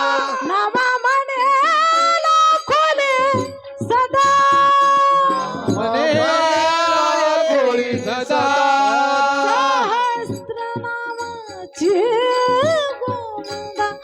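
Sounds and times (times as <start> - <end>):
instrumental accompaniment: 0.0 - 14.0
woman singing devotional song: 0.0 - 14.0.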